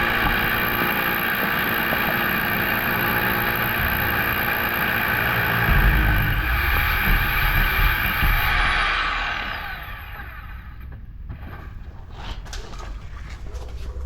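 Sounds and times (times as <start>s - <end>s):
rotary hammer drill drilling: 0.0s - 10.9s.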